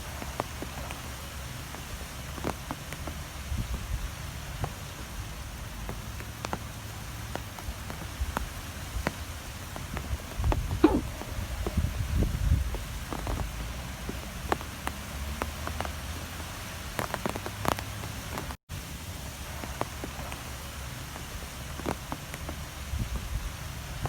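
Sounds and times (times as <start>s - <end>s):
strong wind rumble and hiss: 0.0s - 24.0s.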